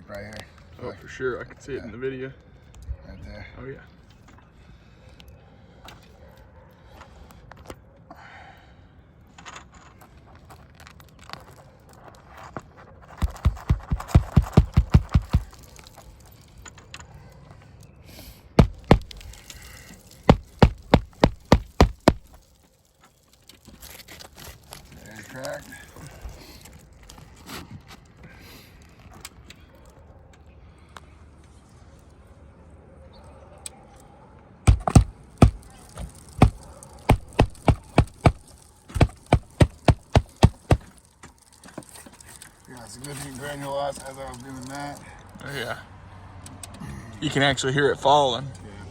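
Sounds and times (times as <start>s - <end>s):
rapid knocks on shingle roof: 13.2s - 16.0s, 18.6s - 22.4s, 34.7s - 41.0s.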